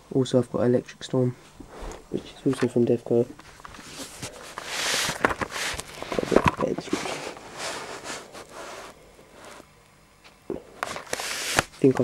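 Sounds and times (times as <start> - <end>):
cardboard package rustling: 3.4 - 9.0, 10.8 - 12.0.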